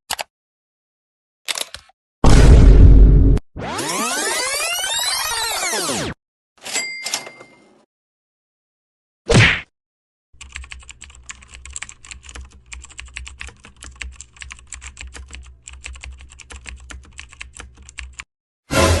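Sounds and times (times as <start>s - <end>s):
computer keyboard typing: 10.4s - 18.3s.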